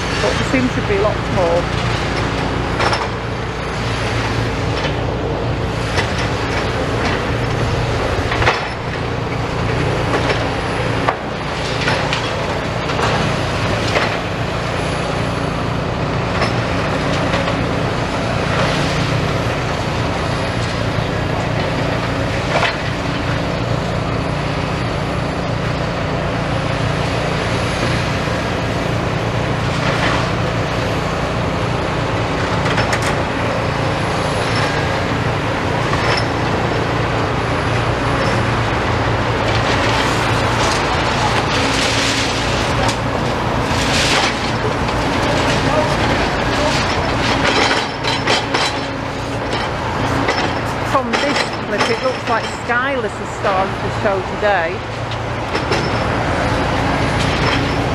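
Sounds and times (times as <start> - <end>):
diesel engine hum: 0.0 - 57.9
knocks and crunches of demolition: 35.8 - 52.7.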